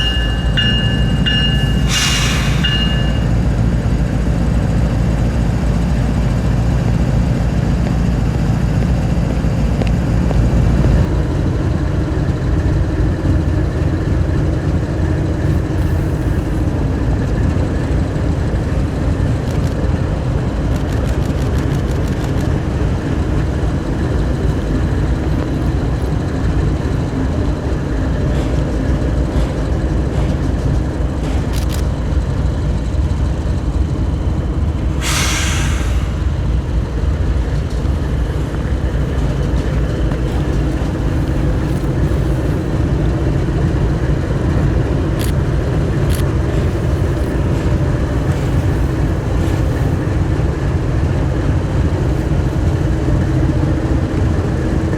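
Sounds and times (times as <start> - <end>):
diesel locomotive engine rumbling: 0.0 - 54.9.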